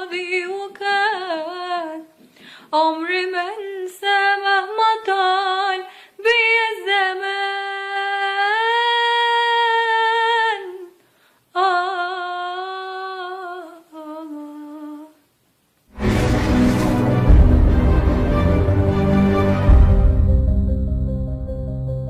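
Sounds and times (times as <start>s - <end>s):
girl singing unaccompanied: 0.0s - 15.3s.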